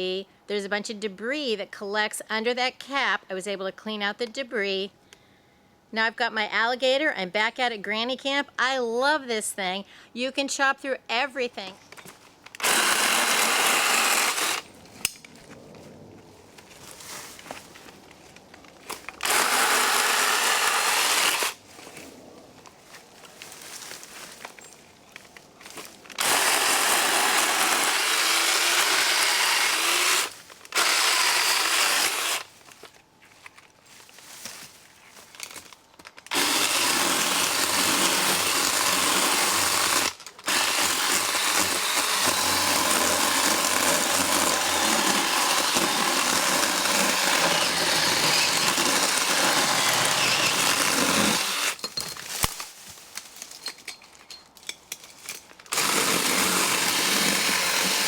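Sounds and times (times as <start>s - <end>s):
electric chainsaw cutting branches: 12.6s - 14.7s, 18.9s - 21.6s, 26.1s - 32.5s, 36.3s - 51.8s, 55.7s - 58.0s.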